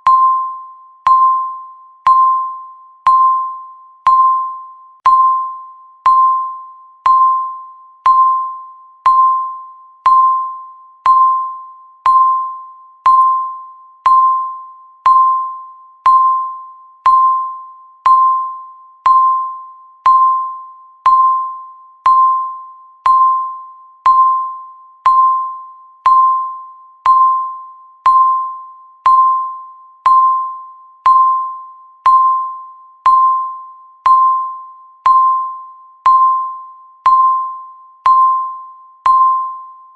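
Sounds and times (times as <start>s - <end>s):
electronic timer beeps: 0.0s - 39.9s.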